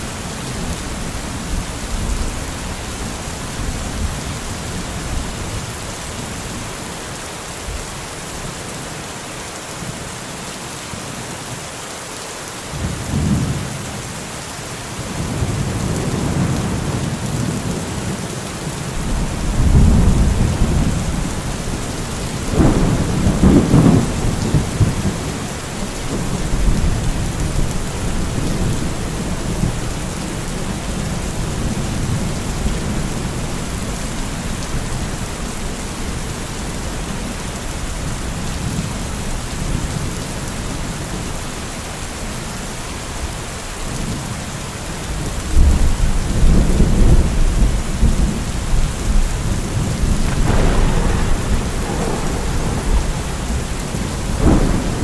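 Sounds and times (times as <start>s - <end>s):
steady rain: 0.0s - 55.0s
thunder rumbling: 15.1s - 33.4s, 45.6s - 55.0s.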